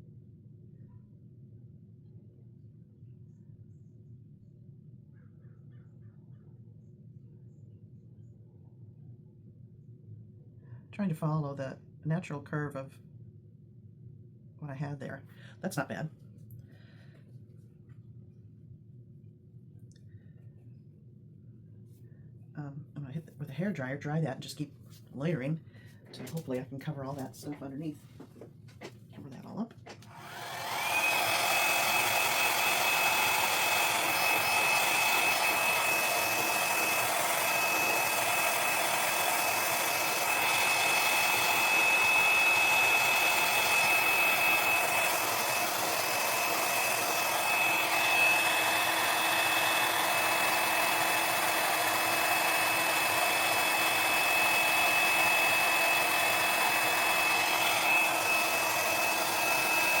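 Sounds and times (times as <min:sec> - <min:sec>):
hair dryer blowing air: 0:26.2 - 0:26.6, 0:28.8 - 1:00.0.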